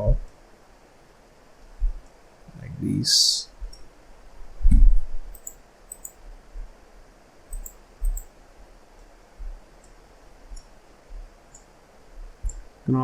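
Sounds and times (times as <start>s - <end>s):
soft low thump: 1.8s - 2.0s, 9.4s - 9.6s, 12.2s - 12.7s
computer mouse clicks: 5.3s - 6.2s, 7.5s - 8.3s, 9.8s - 10.7s, 12.4s - 12.7s
keyboard clicks: 5.3s - 6.2s, 7.5s - 8.3s.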